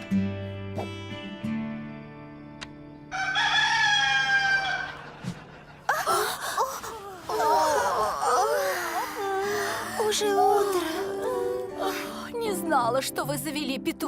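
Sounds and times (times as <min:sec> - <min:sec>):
cartoon rooster crowing: 0:03.1 - 0:05.0.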